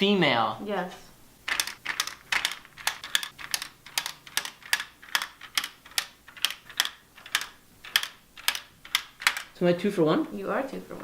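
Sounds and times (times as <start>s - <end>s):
plastic tiles clacking: 1.5s - 9.6s.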